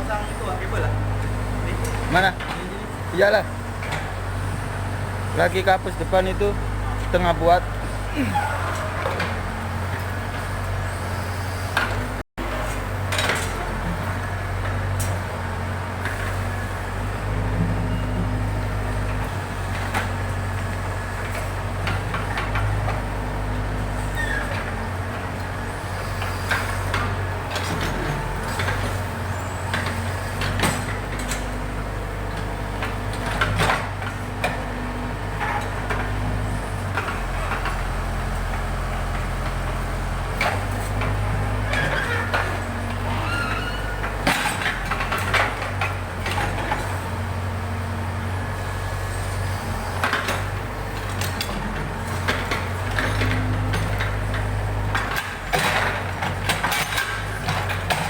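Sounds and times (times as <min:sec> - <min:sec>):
diesel engine running: 0:00.0 - 0:58.0
clanks and knocks of machinery: 0:11.8 - 0:13.8, 0:32.3 - 0:47.2, 0:50.0 - 0:58.0.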